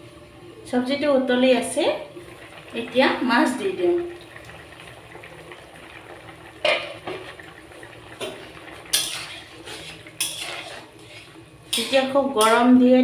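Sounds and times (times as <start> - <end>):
curry bubbling in a pot: 2.0 - 12.4.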